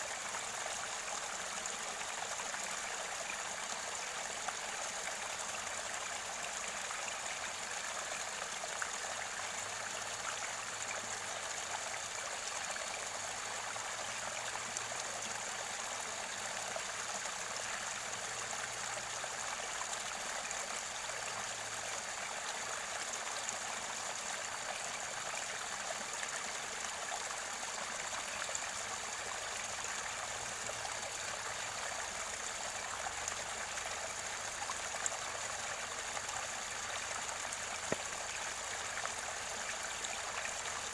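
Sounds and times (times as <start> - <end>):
stream water flowing and gurgling: 0.0 - 40.9.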